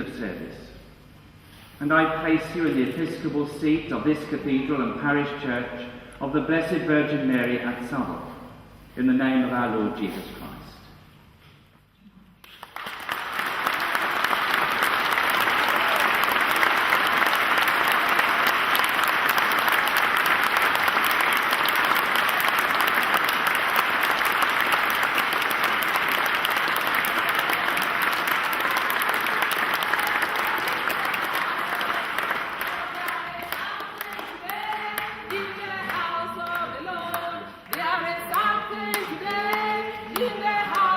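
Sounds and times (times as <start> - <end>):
large crowd applauding: 12.4 - 40.9.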